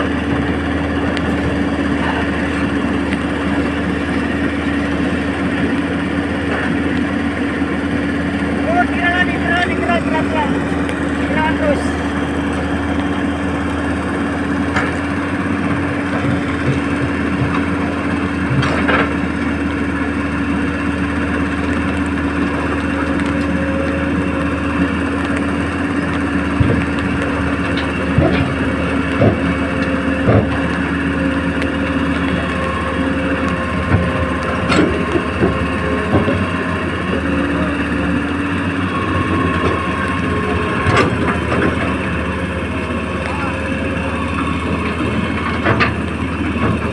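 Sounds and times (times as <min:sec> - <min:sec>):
excavator engine running: 0:00.0 - 0:46.9
knocks and clanks: 0:26.6 - 0:30.8, 0:33.8 - 0:37.2, 0:40.6 - 0:42.1, 0:44.4 - 0:46.9.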